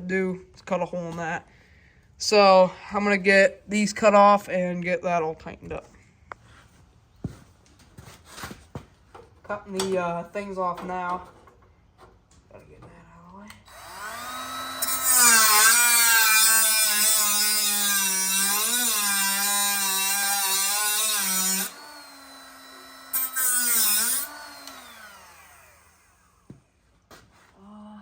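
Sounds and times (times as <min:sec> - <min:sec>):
power tool cutting metal: 0:13.7 - 0:26.5.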